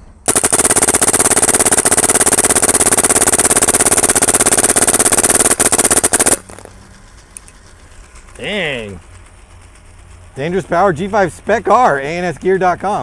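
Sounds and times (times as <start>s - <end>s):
paintball gun firing rapidly: 0.3s - 6.7s.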